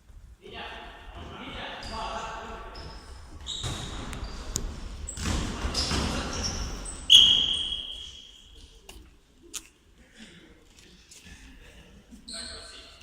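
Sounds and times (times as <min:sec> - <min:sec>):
shoes squeaking: 0:01.8 - 0:08.9, 0:12.2 - 0:13.0.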